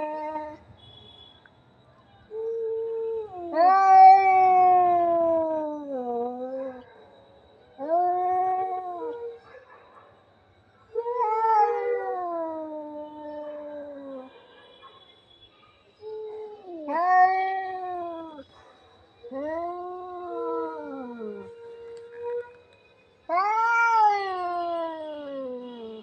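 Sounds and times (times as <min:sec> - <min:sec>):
cat yowling: 0:00.0 - 0:00.6, 0:02.3 - 0:06.8, 0:07.8 - 0:09.6, 0:11.0 - 0:14.4, 0:16.0 - 0:18.4, 0:19.3 - 0:22.5, 0:23.3 - 0:26.0.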